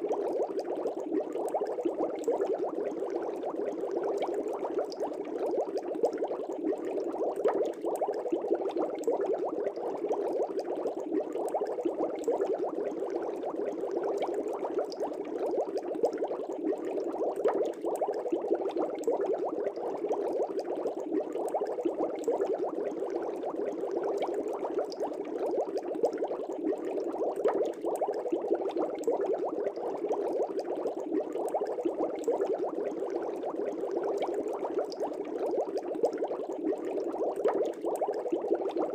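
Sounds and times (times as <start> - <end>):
aquarium air bubbles: 0.0 - 38.9.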